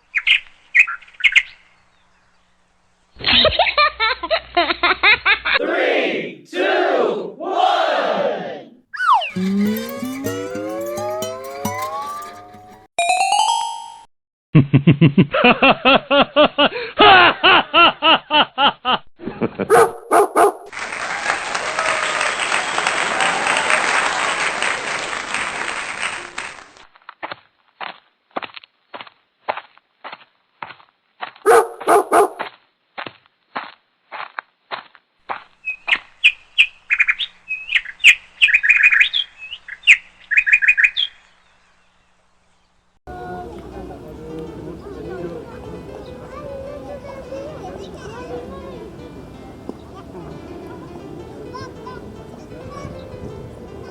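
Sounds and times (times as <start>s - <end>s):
bird chirping: 0.0s - 2.6s, 8.9s - 12.8s, 35.6s - 42.8s
dog barking rapidly: 19.7s - 20.8s, 31.5s - 32.5s.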